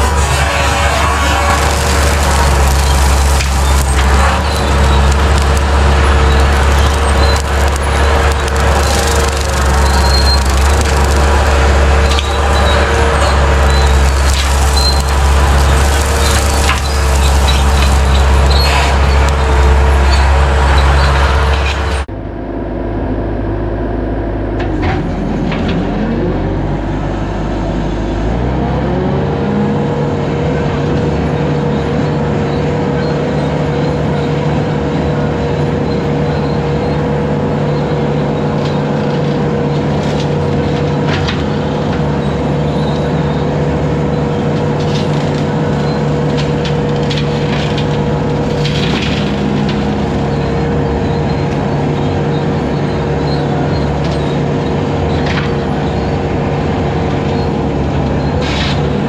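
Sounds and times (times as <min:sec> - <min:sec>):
brush cutter cutting: 0:00.0 - 0:22.0
diesel engine running: 0:00.0 - 0:59.0.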